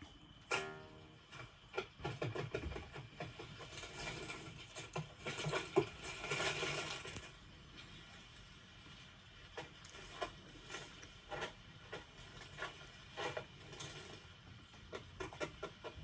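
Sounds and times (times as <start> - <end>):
rapid taps and clicks: 1.7 - 4.0.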